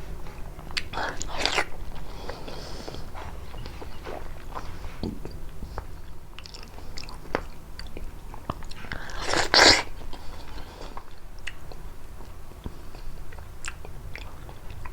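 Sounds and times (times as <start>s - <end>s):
biting and chewing fruit: 0.1s - 14.9s.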